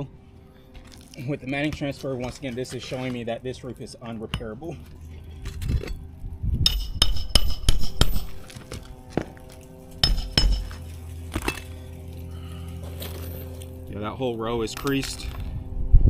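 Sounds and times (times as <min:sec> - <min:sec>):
steady low hum: 0:00.0 - 0:16.0
metal tool tapping shingles: 0:06.7 - 0:09.3, 0:10.0 - 0:11.7.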